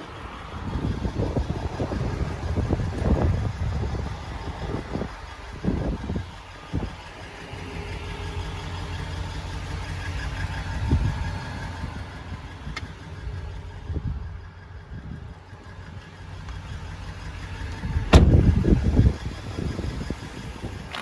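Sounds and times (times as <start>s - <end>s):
truck engine idling: 0.0s - 21.0s
low thumps: 18.0s - 18.6s.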